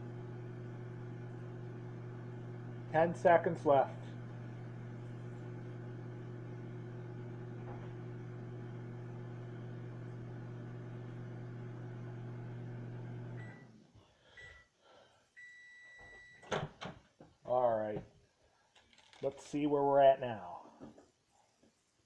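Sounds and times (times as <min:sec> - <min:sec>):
microwave oven humming: 0:00.0 - 0:13.8
microwave beeps: 0:12.6 - 0:13.8, 0:14.4 - 0:14.7, 0:15.4 - 0:16.5.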